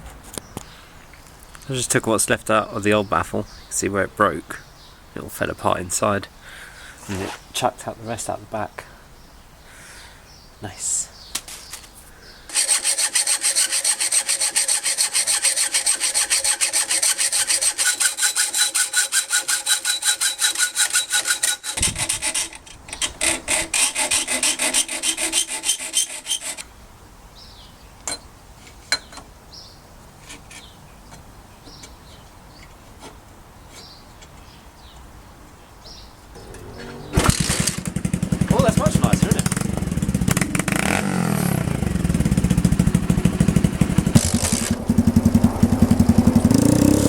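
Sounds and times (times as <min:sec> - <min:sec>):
hand tool rasping on metal: 0:12.5 - 0:26.6.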